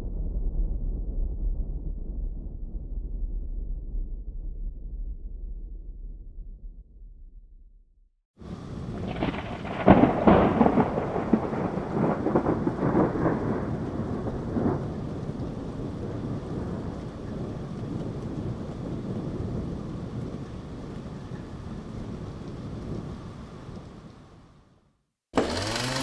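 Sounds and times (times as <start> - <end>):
thunder crackling and rumbling: 8.4 - 24.5
steady rain: 8.4 - 24.6, 25.4 - 26.0.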